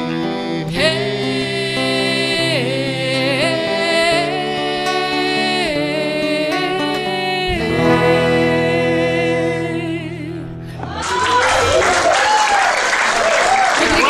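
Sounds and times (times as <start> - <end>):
audience applause and cheering: 10.8 - 14.0.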